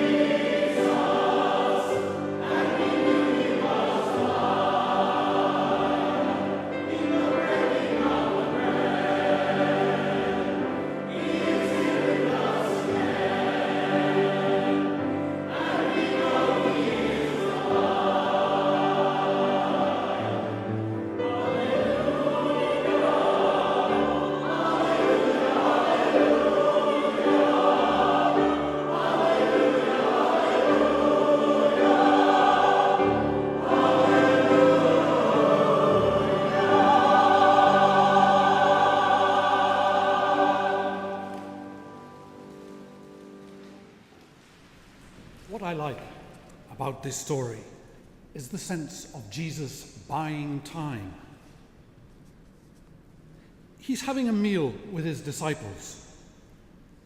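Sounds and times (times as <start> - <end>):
choir singing a hymn: 0.0 - 44.6.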